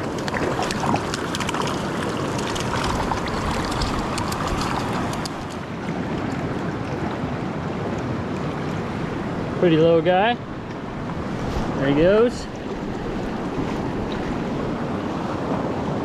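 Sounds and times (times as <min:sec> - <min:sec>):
small clicks and splashes: 0:00.0 - 0:06.7
creek water rushing: 0:00.0 - 0:16.0.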